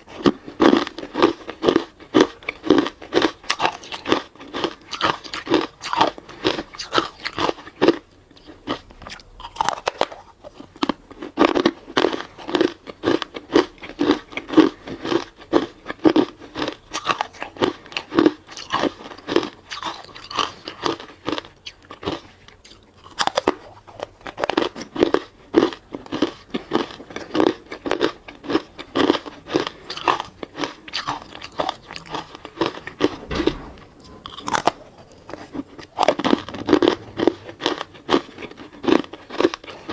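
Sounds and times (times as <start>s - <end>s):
crunching ice while chewing: 0.0s - 33.2s, 34.0s - 39.9s.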